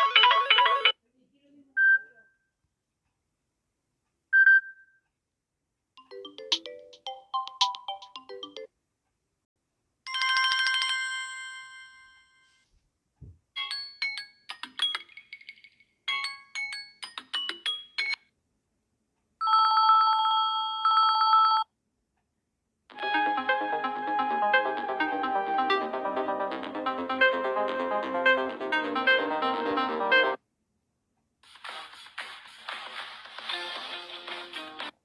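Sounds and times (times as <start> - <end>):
melodic phone jingle: 6.0 - 8.7.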